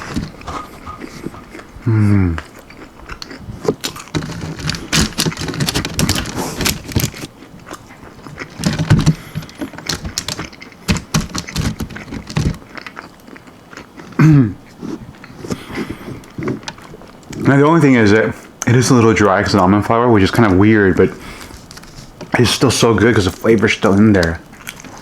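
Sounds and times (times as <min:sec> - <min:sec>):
crunching and chewing fried chicken: 0:00.0 - 0:25.0
person humming: 0:01.8 - 0:02.4.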